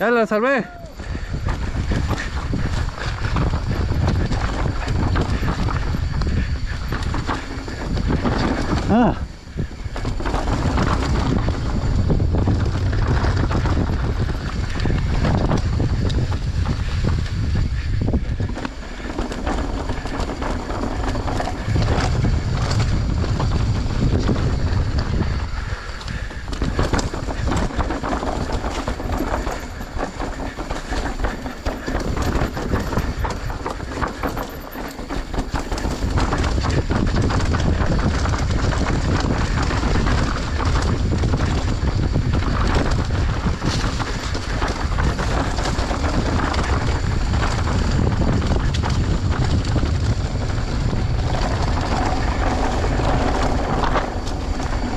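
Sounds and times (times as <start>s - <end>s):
bike clattering and knocking: 12.7s - 25.3s, 26.1s - 54.9s.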